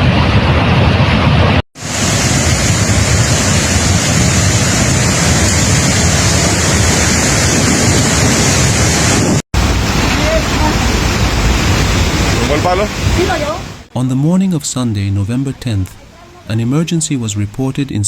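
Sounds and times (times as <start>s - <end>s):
floodwater rushing: 0.0s - 13.9s
low water rumble: 0.0s - 13.9s.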